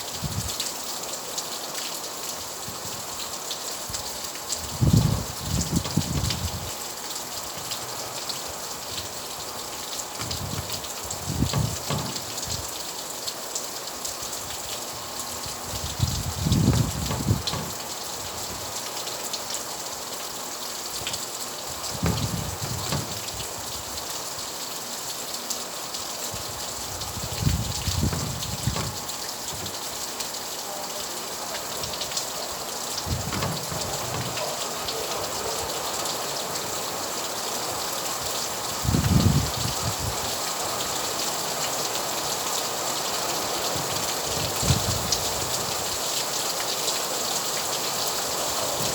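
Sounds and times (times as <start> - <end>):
rain hissing: 0.0 - 48.9
low rumbles: 15.9 - 17.9, 21.9 - 23.7, 27.2 - 29.9.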